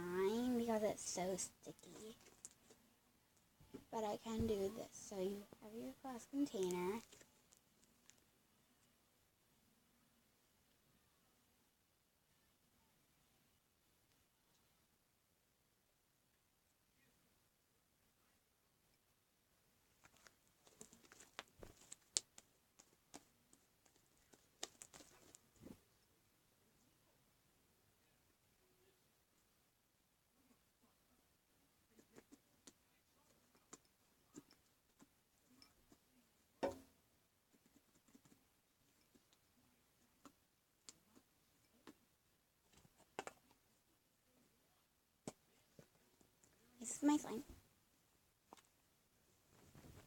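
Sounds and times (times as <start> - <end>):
clicks and taps of handled objects: 20.0 - 25.8, 42.7 - 43.6.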